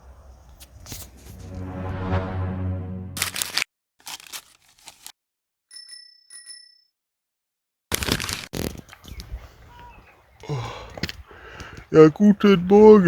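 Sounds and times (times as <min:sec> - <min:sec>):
rustling and handling noise: 0:03.2 - 0:05.1
bright bell dings: 0:05.7 - 0:06.9.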